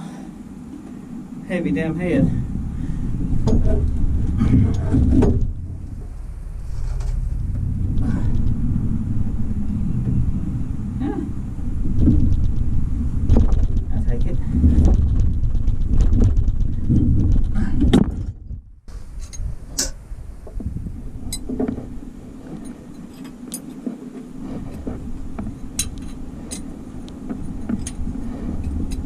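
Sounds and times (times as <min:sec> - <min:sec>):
loud low rumble: 0:00.0 - 0:22.3
steady low hum: 0:00.0 - 0:29.0.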